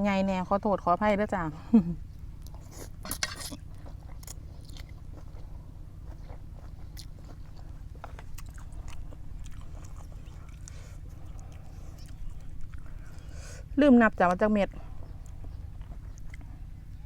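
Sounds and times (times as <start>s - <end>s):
person chewing crunchy food: 2.4s - 13.4s, 14.8s - 17.0s.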